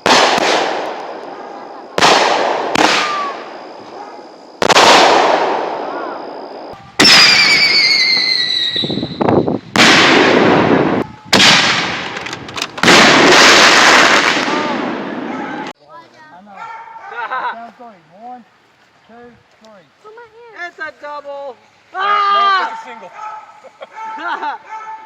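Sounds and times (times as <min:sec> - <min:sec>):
firework shells bursting: 0:00.0 - 0:15.7
warbling whistle falling in pitch: 0:07.0 - 0:09.3.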